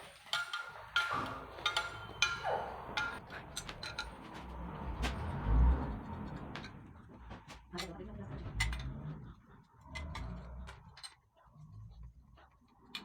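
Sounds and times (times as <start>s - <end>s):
metallic clinks of tools: 0.0s - 4.4s.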